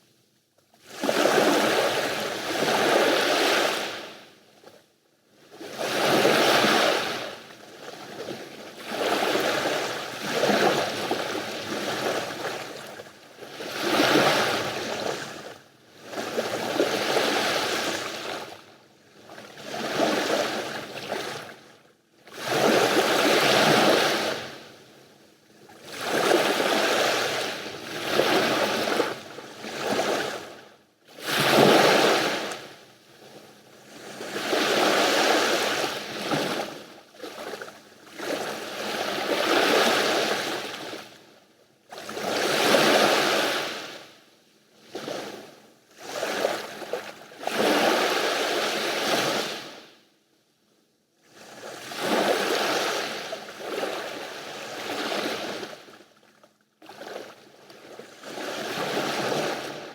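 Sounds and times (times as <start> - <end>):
sea waves breaking on shore: 31.2 - 32.8, 56.9 - 59.9.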